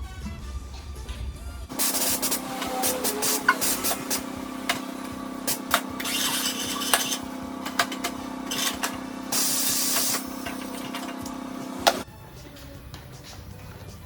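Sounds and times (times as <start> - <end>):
compressed air hiss: 1.7 - 12.0
machine hum: 1.7 - 12.1.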